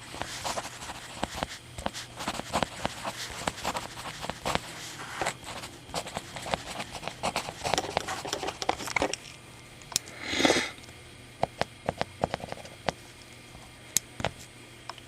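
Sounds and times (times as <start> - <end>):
mechanical pencils clicking: 6.1 - 10.2
person sniffing: 10.1 - 10.8.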